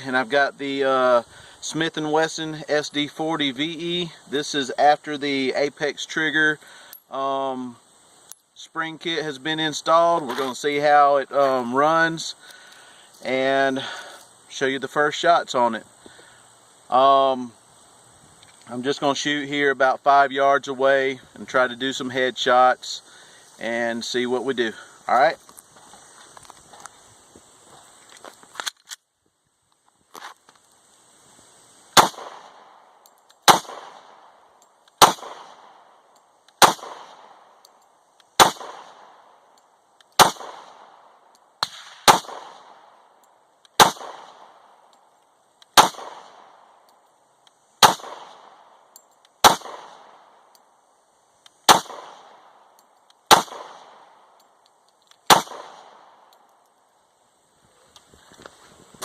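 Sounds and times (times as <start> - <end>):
pistol shots echoing: 32.0 - 32.8, 33.4 - 34.2, 35.0 - 35.8, 36.6 - 37.4, 38.4 - 39.2, 40.2 - 41.0, 41.6 - 42.9, 43.8 - 44.6, 45.8 - 46.6, 47.8 - 48.7, 49.4 - 50.3, 51.7 - 52.6, 53.3 - 54.2, 55.3 - 56.2.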